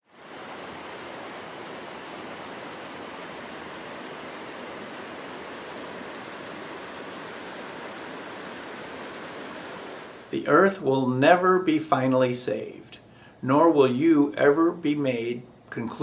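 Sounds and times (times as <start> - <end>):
stream water rushing: 0.0 - 10.3.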